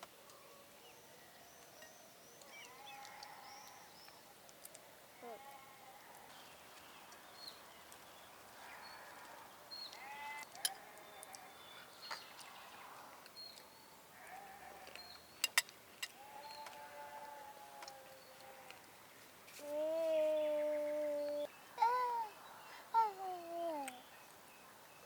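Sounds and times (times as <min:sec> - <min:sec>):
sheep bleating: 0:05.2 - 0:06.1, 0:14.2 - 0:15.0, 0:16.2 - 0:18.8.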